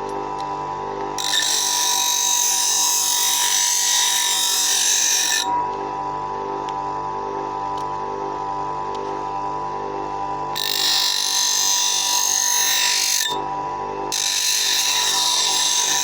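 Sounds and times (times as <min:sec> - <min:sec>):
bench grinder motor whine: 0:00.0 - 0:16.0
steel blade grinding on wheel: 0:14.1 - 0:16.0.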